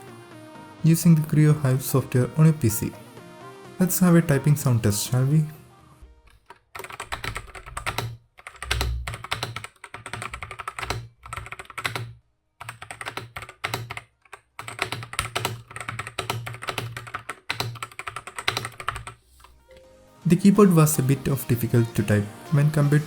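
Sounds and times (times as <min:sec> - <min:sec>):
mechanical keyboard typing: 0:06.4 - 0:19.2.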